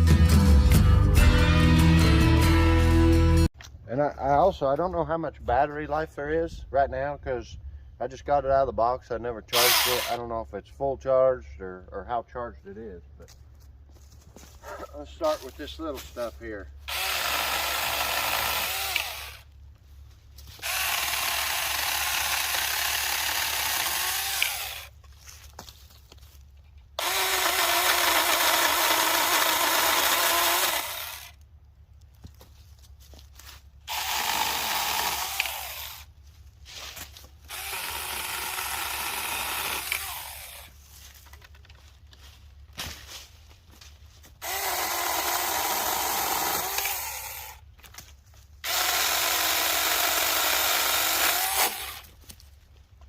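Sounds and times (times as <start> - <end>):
handheld chainsaw whining: 9.6 - 10.2, 16.9 - 19.5, 20.5 - 25.0, 27.0 - 31.4, 33.9 - 36.2, 37.4 - 40.8, 44.4 - 47.6, 48.6 - 52.4.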